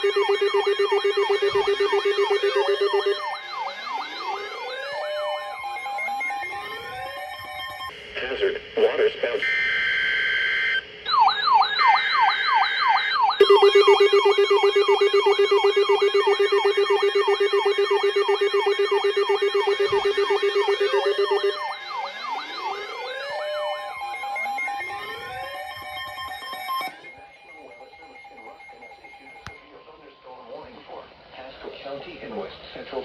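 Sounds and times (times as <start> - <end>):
short steady electronic tones: 0.0 - 3.5, 13.4 - 21.9
rapidly pulsing buzzer tone: 0.0 - 3.6, 13.4 - 29.5
electronic siren yelping: 0.0 - 7.9, 9.5 - 29.6.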